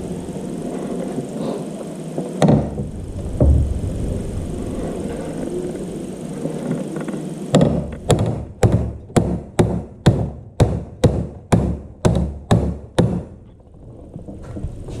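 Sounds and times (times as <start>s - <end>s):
sharp knocks: 2.4s - 3.8s, 7.5s - 13.4s.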